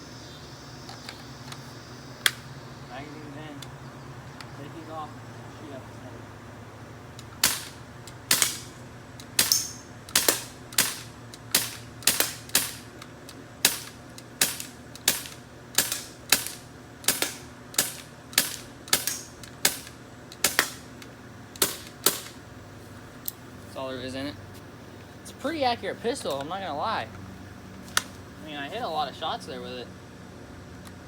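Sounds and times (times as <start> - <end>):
bb pistol firing sharp cracks: 2.2 - 2.5, 7.2 - 22.5.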